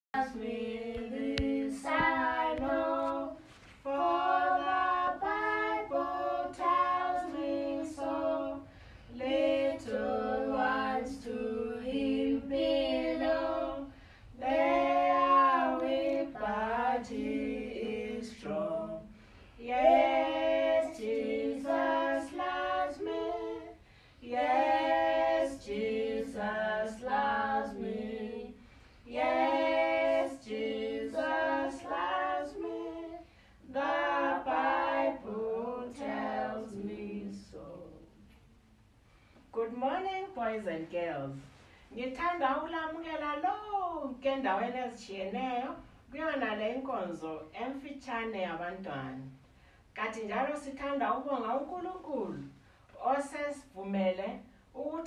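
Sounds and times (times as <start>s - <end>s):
woman and children singing: 0.0s - 38.3s.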